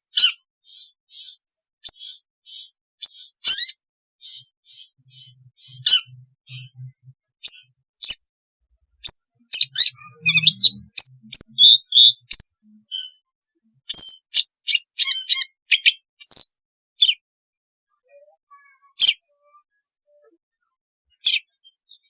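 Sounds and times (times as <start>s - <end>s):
bird chirping and whistling: 0.2s - 8.2s, 9.0s - 13.2s, 13.9s - 17.2s.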